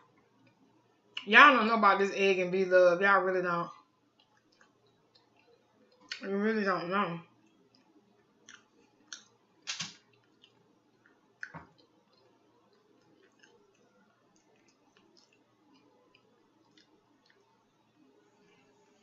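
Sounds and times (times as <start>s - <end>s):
wet mouth smacks and clicks: 7.8s - 12.4s.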